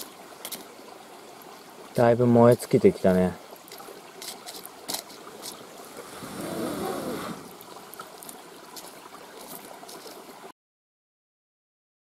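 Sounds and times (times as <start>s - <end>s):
river rushing: 3.5s - 10.5s.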